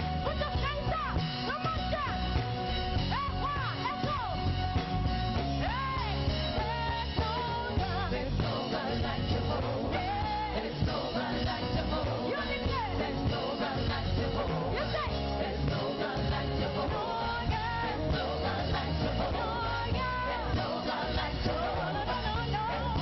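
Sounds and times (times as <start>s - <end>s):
singing over a live band: 5.6s - 23.0s.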